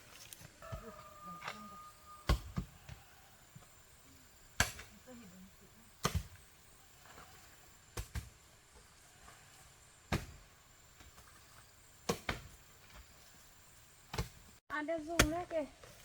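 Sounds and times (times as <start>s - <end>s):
hoe chopping into soil: 6.0s - 6.4s, 8.0s - 8.4s, 10.1s - 11.4s, 12.0s - 13.1s, 14.1s - 14.4s.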